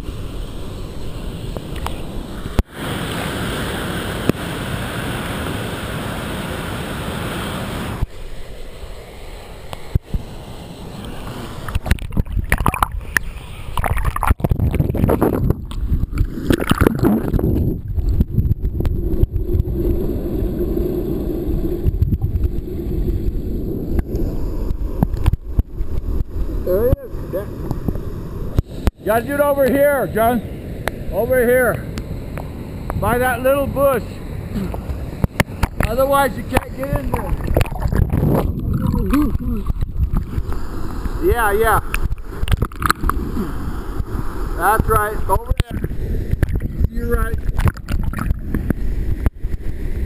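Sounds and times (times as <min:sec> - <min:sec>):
creek water rushing: 0:00.0 - 0:18.2, 0:19.0 - 0:50.0
knocks and splashes: 0:11.7 - 0:19.7, 0:34.6 - 0:40.5, 0:47.4 - 0:48.7.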